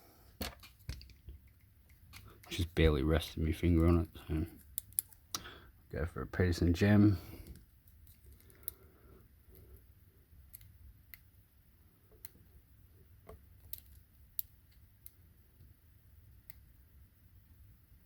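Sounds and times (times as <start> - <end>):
faint clicks of lock pick: 7.4 - 8.8, 10.5 - 11.3.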